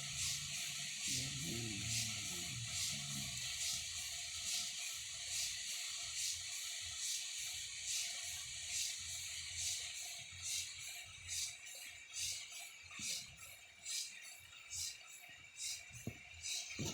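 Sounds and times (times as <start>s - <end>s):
faint steady hum: 0.0s - 4.7s.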